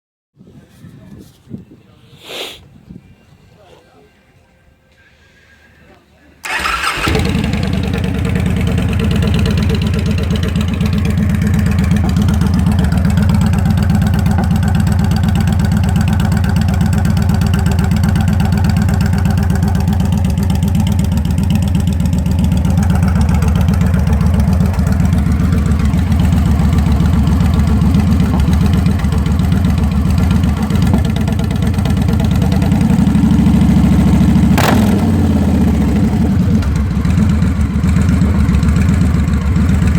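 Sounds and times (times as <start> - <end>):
motorcycle engine idling: 6.4 - 39.9.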